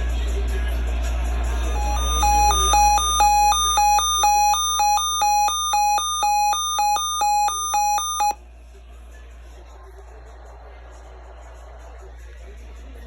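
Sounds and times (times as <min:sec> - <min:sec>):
alternating two-pitch alert tone: 0:01.6 - 0:08.4.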